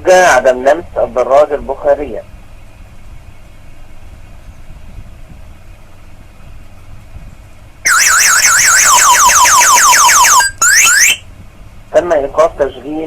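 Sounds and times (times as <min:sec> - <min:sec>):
motorcycle alarm siren: 0:07.9 - 0:11.3.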